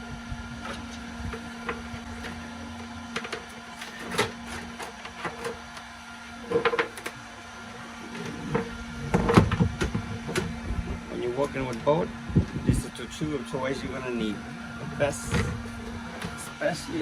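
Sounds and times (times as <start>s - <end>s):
low hum: 6.2s - 17.0s.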